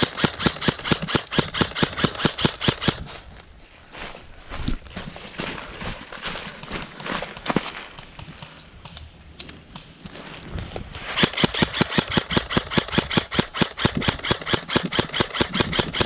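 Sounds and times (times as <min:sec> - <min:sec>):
airsoft gun rapid fire: 0:00.0 - 0:03.1, 0:11.1 - 0:16.0
rustling: 0:03.0 - 0:08.7
scattered clicks: 0:06.7 - 0:09.9, 0:11.2 - 0:16.0.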